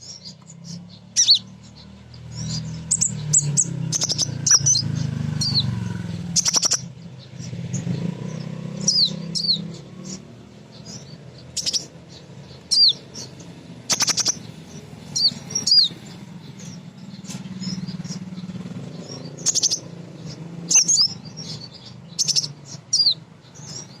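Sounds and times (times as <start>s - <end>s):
bird chirping: 0.0s - 24.0s.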